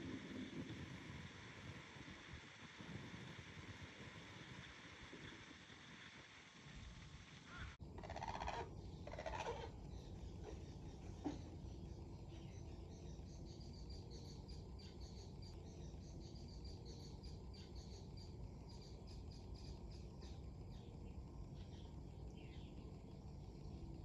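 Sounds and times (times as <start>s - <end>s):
wind rumble on microphone: 0.0s - 7.5s
small bird chirping: 8.0s - 24.0s.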